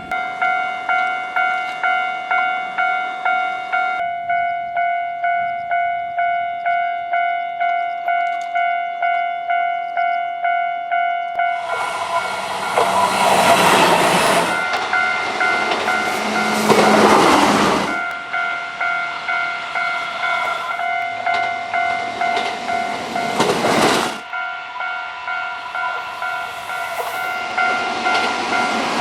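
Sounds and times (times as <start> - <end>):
level crossing warning bell: 0.0 - 29.0
train wheels rushing on rails: 11.4 - 29.0.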